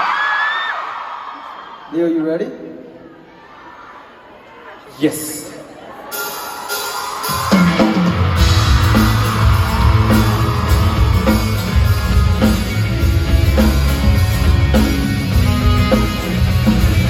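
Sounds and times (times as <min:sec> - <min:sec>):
rock band playing live: 0:06.1 - 0:17.0.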